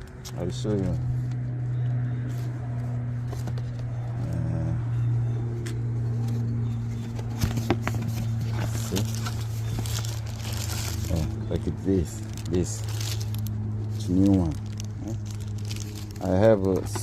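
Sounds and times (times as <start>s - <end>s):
steady low hum: 0.0s - 17.0s
crinkly ribbon rustling: 7.9s - 17.0s.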